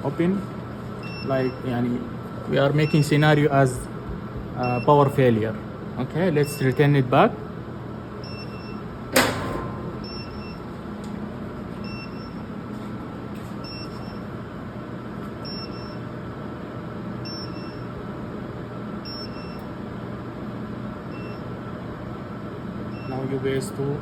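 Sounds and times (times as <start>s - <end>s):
cooling fans humming: 0.0s - 24.0s
alarm buzzer beeping: 8.3s - 10.7s.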